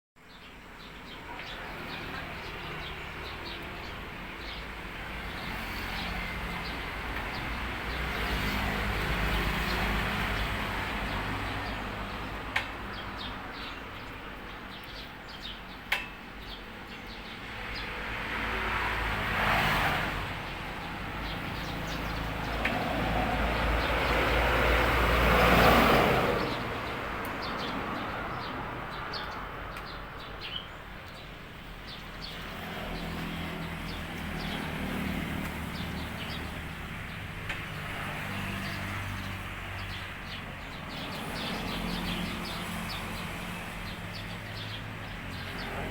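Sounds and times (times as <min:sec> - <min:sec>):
vehicles passing by: 0:00.3 - 0:45.9.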